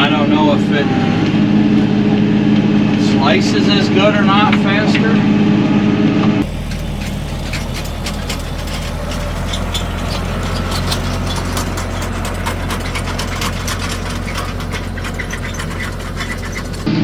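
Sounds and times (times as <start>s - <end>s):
clicks and rattles: 6.4s - 17.0s
tractor diesel engine running: 6.4s - 17.0s.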